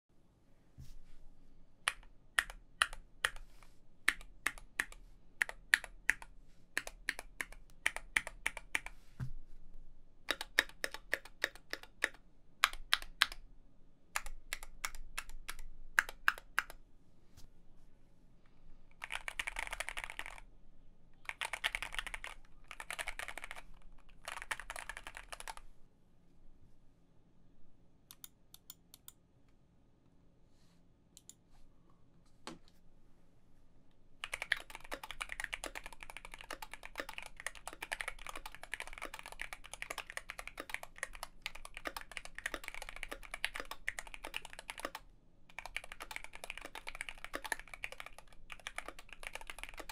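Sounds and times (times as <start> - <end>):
mechanical keyboard typing: 10.3 - 13.4, 19.0 - 20.4, 21.3 - 25.6, 34.2 - 49.9.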